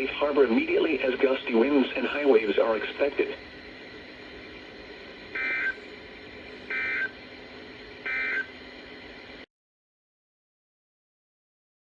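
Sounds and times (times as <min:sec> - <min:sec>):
steady hiss: 0:00.0 - 0:09.4
two-tone digital chirps: 0:05.4 - 0:05.8, 0:06.7 - 0:07.1, 0:08.1 - 0:08.5.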